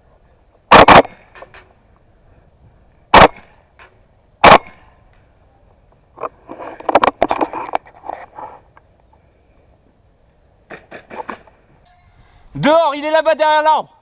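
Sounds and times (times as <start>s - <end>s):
airsoft rifle shots: 0.7s - 1.4s, 3.1s - 3.6s, 4.4s - 4.8s.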